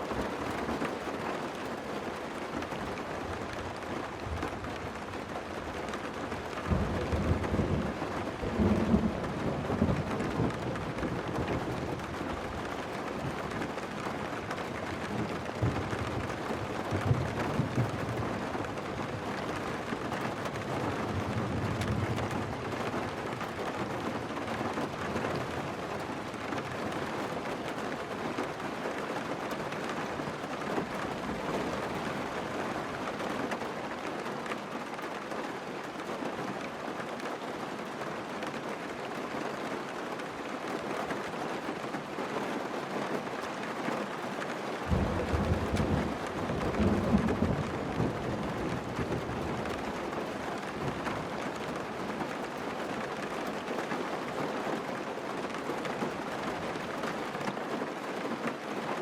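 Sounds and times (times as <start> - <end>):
thunder rumbling: 44.9 - 51.9.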